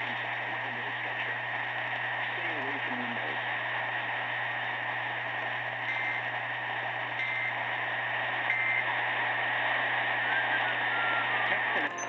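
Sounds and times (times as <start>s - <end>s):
radio hiss: 0.0s - 12.0s
short data bursts: 5.8s - 6.4s, 7.1s - 7.8s, 8.4s - 9.0s.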